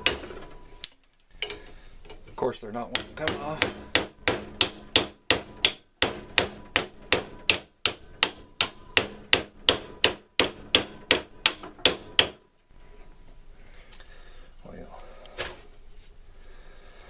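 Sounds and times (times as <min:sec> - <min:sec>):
hammer blows on wooden handles: 0:02.9 - 0:12.4.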